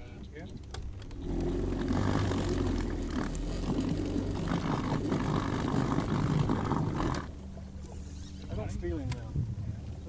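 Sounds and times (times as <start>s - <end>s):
boat motor rumble: 0.0s - 10.0s.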